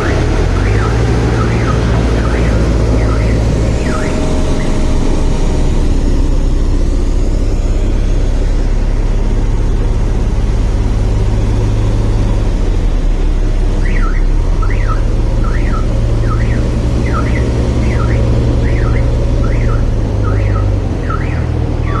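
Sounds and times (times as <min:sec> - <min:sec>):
warbling electronic chirp: 0:00.0 - 0:07.0, 0:13.8 - 0:22.0
diesel engine rumbling: 0:00.0 - 0:22.0.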